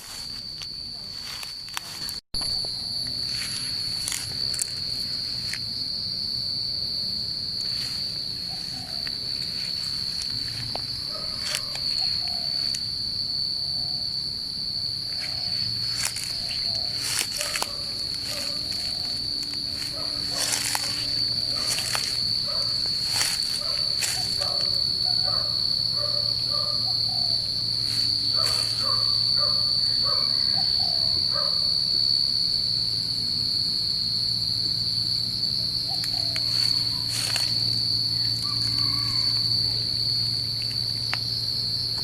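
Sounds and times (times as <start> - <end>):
crickets trilling: 0.0 - 42.0.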